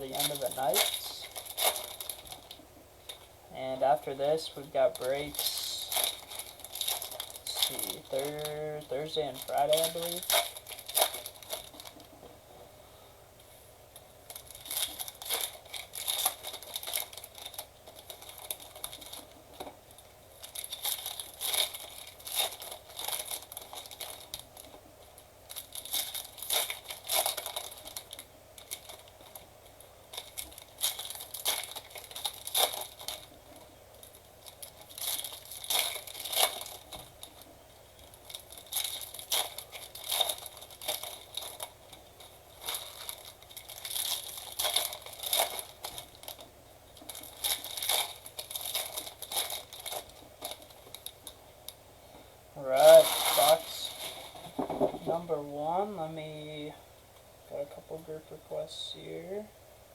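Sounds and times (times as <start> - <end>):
plastic wrapping crinkling and tearing: 0.0 - 12.3, 13.9 - 56.7.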